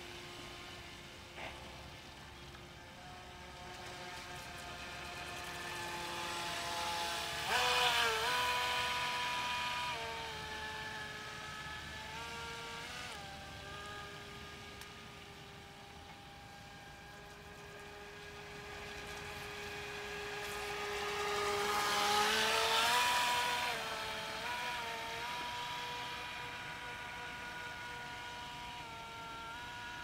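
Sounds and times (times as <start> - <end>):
electric motor whine: 0.0 - 30.0.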